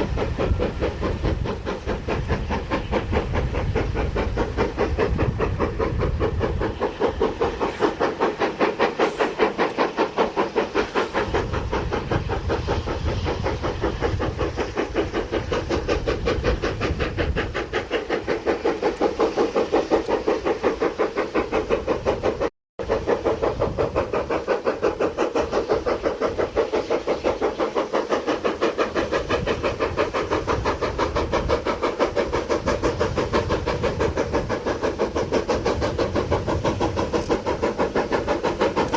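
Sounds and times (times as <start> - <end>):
steam locomotive exhaust beating: 0.0 - 38.9.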